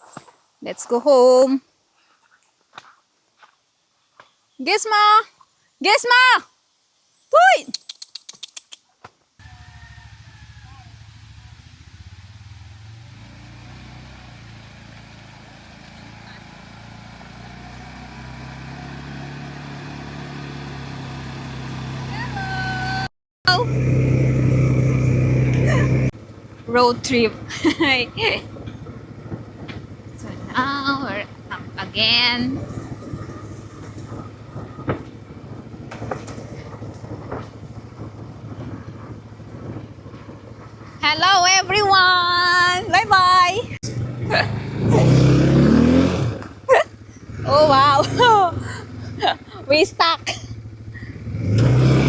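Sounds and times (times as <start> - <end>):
vehicle engine running steadily: 9.4 - 52.0
knocks and rattles: 31.2 - 41.6.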